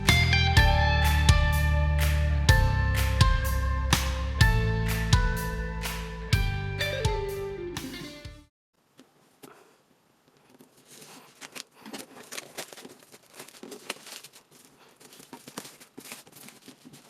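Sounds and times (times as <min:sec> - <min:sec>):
packaging rustling and crinkling: 0:10.3 - 0:17.0.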